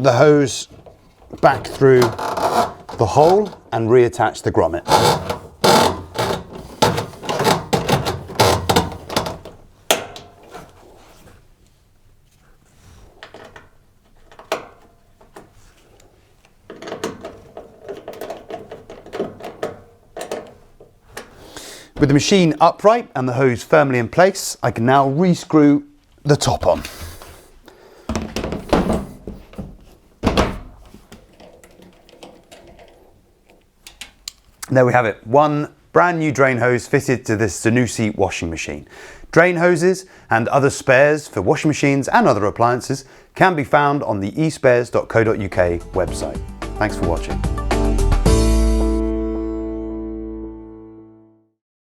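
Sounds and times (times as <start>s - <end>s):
hose scraping and knocking on metal: 0.0s - 11.5s, 12.8s - 22.3s, 28.1s - 33.7s
heavy thuds of panel set down: 28.1s - 30.9s.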